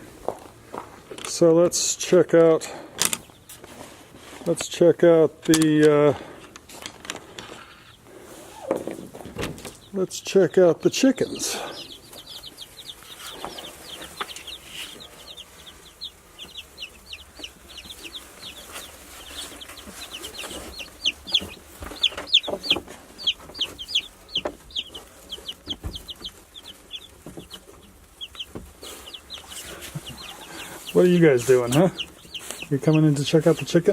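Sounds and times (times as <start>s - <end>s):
chickens peeping: 1.3s - 33.9s.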